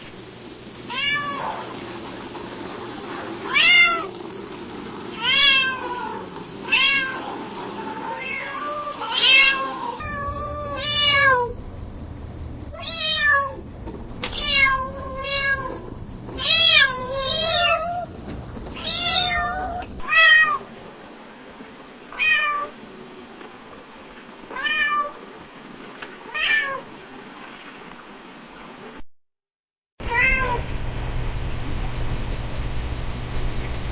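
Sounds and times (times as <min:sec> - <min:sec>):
cat meowing softly: 0:08.0 - 0:11.6, 0:30.1 - 0:30.6
low hum: 0:10.0 - 0:20.0, 0:30.1 - 0:33.9.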